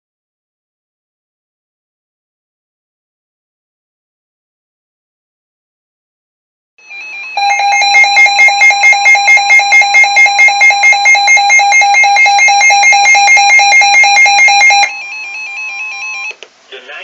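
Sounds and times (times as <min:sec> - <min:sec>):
steady warning alarm tone: 0:06.8 - 0:16.3
weather radio pulsing alarm beeps: 0:06.9 - 0:16.3.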